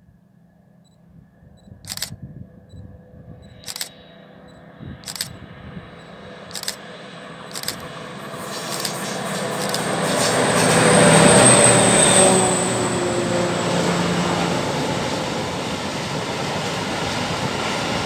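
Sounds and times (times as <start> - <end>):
sharp clicks: 1.9 - 2.2, 3.6 - 3.9, 5.1 - 5.4, 6.5 - 6.8, 7.5 - 7.9, 8.6 - 9.0, 9.6 - 10.0
train wheel noise: 3.7 - 3.9, 5.1 - 5.3, 6.5 - 6.8, 7.5 - 7.9, 8.7 - 9.0, 9.6 - 10.7.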